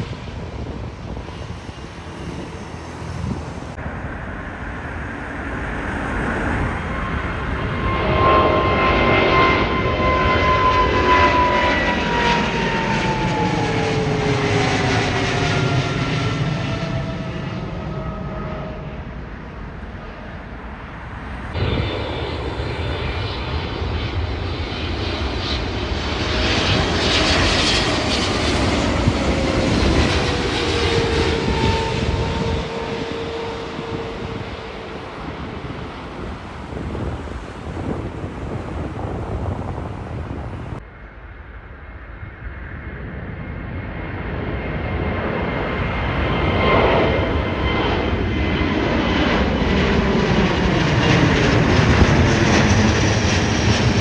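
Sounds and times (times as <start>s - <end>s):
engine whine sliding down: 0.0s - 40.8s
jet engines passing by: 0.0s - 54.0s.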